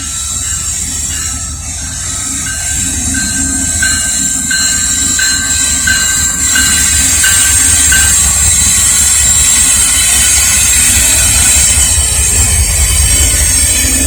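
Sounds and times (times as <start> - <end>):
bell ringing: 0.0 - 10.8
freight train rumbling past: 0.0 - 14.0
high-pitched wheel squeal: 0.0 - 14.0.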